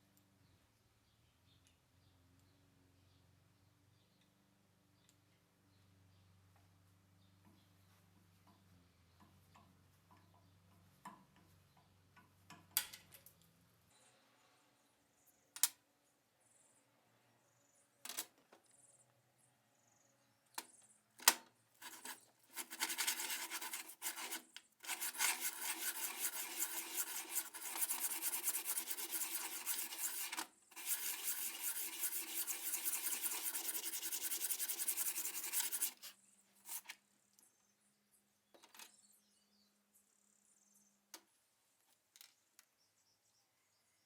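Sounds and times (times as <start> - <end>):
abrasive rasping on knife steel: 21.8 - 36.1.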